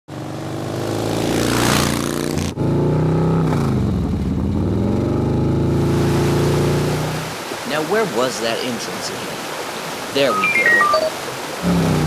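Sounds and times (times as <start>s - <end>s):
motor vehicle engine running: 0.1s - 7.3s.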